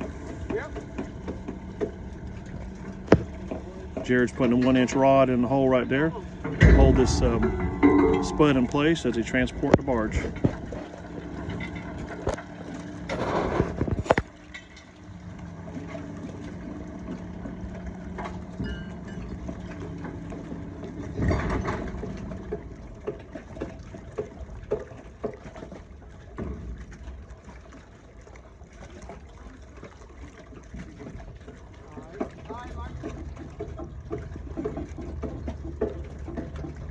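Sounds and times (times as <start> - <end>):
boat engine hum: 0.0 - 36.9
water sounds: 0.0 - 36.9
knocks: 6.2 - 10.8.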